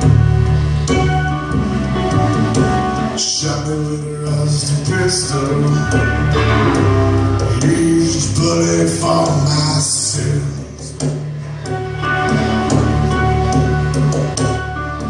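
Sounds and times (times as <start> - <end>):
live blues-rock band: 0.0 - 15.0.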